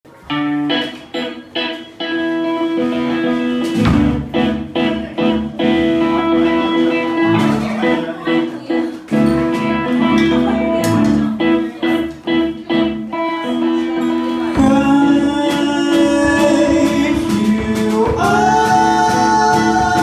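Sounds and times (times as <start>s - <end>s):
guitar strumming chords: 0.1s - 20.0s
drums: 2.4s - 8.4s, 9.0s - 13.5s, 14.5s - 20.0s
bass: 3.6s - 7.9s, 9.2s - 11.6s, 14.6s - 20.0s.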